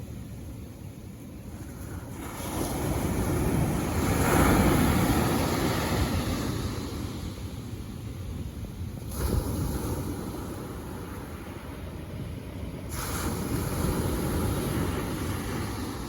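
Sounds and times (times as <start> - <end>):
sea wave washing up shore: 9.0 - 11.9, 12.8 - 16.0.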